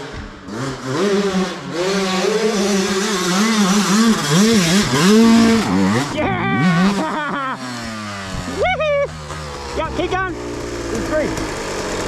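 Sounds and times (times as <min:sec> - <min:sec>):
dirt bike engine revving: 0:00.0 - 0:12.0.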